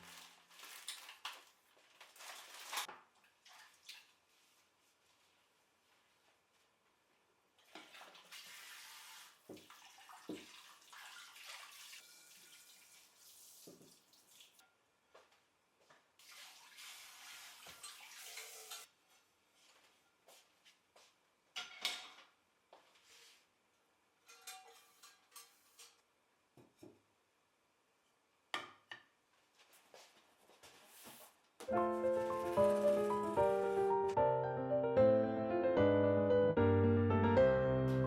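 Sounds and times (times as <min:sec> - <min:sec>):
water running from a tap: 0:07.8 - 0:14.6, 0:16.2 - 0:18.9.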